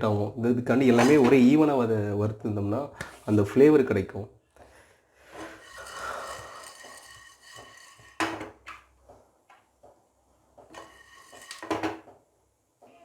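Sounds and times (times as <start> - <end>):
spatula scraping a pan: 5.2 - 8.2, 10.7 - 11.8.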